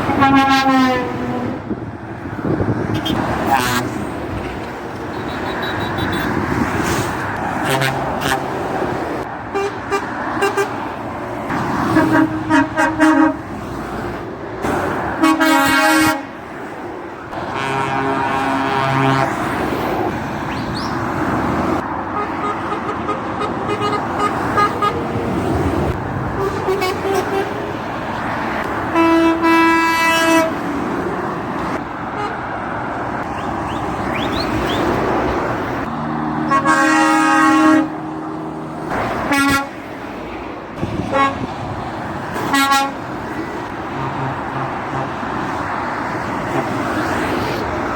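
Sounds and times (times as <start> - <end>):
truck horn toots: 0.0 - 1.6, 2.9 - 4.0, 5.1 - 6.4, 7.6 - 8.5, 9.5 - 10.8, 11.8 - 13.5, 15.2 - 16.4, 17.4 - 19.4, 22.1 - 25.0, 26.4 - 27.6, 28.9 - 30.6, 32.1 - 32.4, 36.4 - 38.1, 39.2 - 39.8, 41.1 - 41.5, 42.4 - 43.1, 44.0 - 45.2
road traffic noise: 0.0 - 47.9
lower-pitched horn: 17.6 - 19.3.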